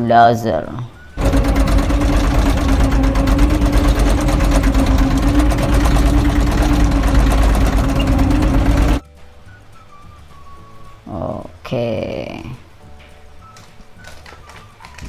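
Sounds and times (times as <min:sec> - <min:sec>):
constant hum: 0:01.2 - 0:09.0
toy bulldozer rattling: 0:01.2 - 0:09.0.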